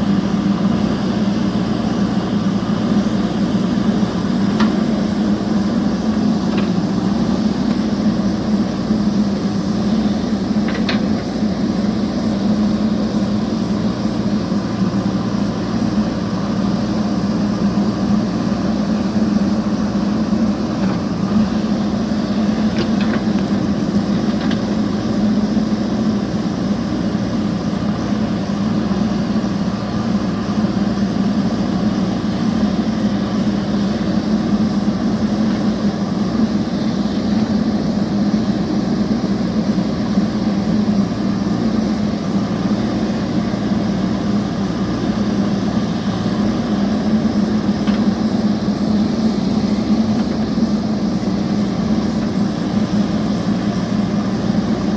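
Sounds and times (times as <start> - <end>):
motor humming: 2.1 - 25.7.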